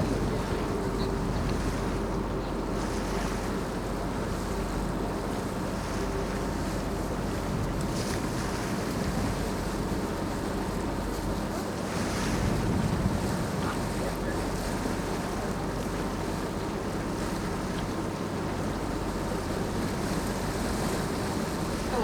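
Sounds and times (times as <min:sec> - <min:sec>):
boat engine hum: 0:00.0 - 0:22.0
water rushing past hull: 0:00.0 - 0:22.0
wind buffeting microphone: 0:12.0 - 0:14.4.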